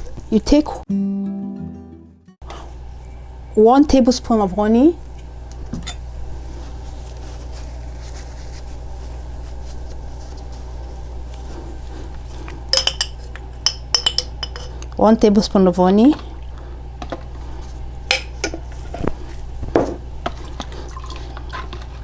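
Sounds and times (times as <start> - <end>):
steady low hum: 2.4 - 22.0
metal spoon clinking against glass: 12.7 - 14.8.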